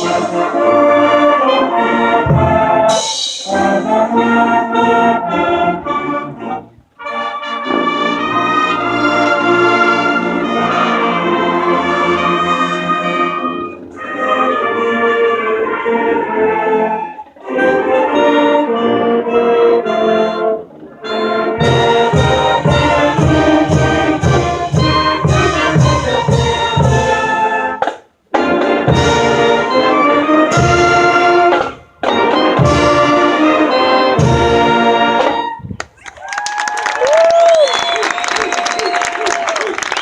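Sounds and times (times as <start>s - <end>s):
marching band brass chords: 0.0s - 35.6s
low drum beat: 21.6s - 27.1s.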